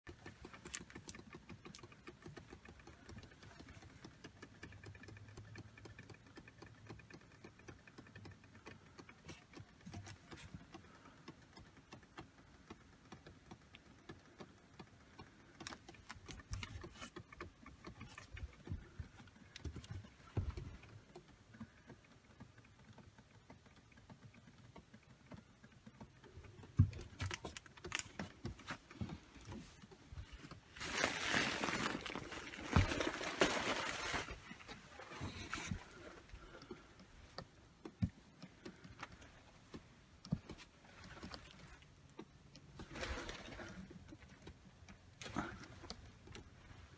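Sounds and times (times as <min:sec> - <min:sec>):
pipes creaking and ticking: 0:00.1 - 0:46.9
running water: 0:26.6 - 0:37.4.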